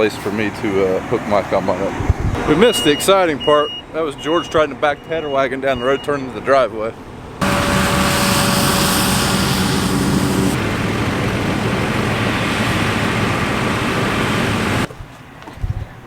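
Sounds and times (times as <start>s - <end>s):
vehicle engine running loudly: 7.4s - 14.9s.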